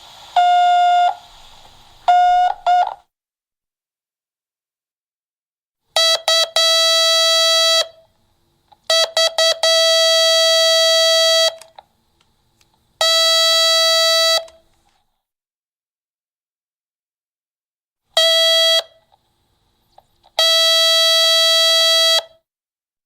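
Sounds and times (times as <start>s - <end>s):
intercom buzzer buzzing: 6.0s - 8.0s, 8.9s - 11.7s, 20.4s - 22.3s.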